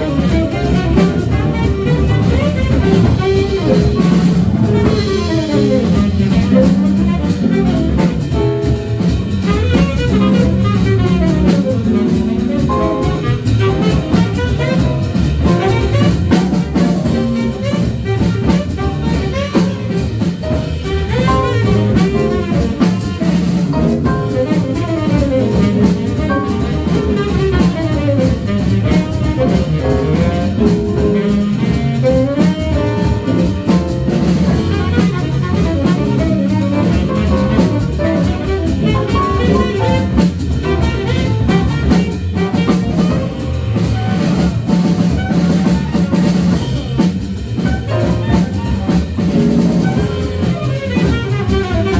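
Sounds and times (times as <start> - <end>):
drum kit playing busily: 0.0 - 51.9
horn melody sliding: 0.0 - 51.9.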